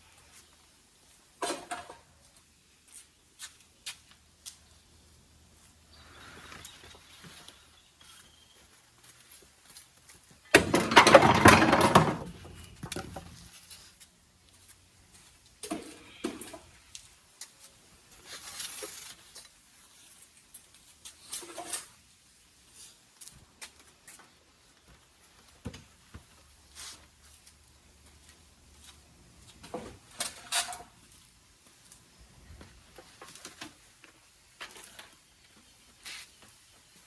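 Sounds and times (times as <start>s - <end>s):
knocks and rustling: 10.5s - 13.8s
loud clattering and rattling: 10.6s - 12.5s.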